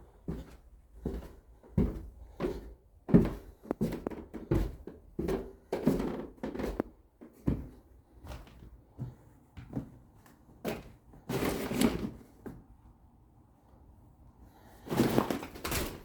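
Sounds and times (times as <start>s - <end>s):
demolition knocks and thuds: 14.9s - 16.0s.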